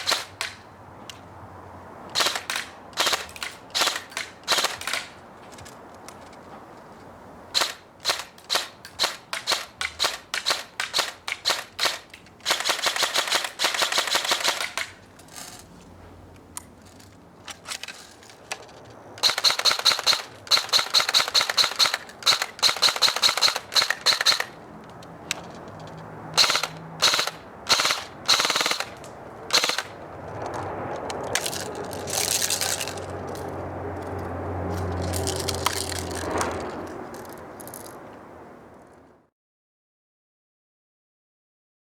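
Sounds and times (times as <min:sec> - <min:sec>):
airsoft gun firing: 0:00.0 - 0:00.6, 0:02.2 - 0:05.1, 0:07.6 - 0:15.0, 0:19.2 - 0:24.6, 0:26.4 - 0:30.0.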